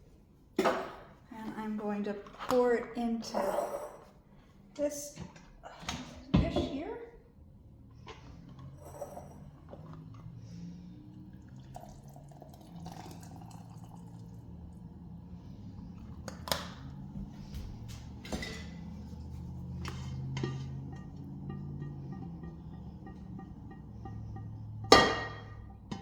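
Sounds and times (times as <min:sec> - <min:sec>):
gravy pouring and dripping: 0:08.4 - 0:17.2.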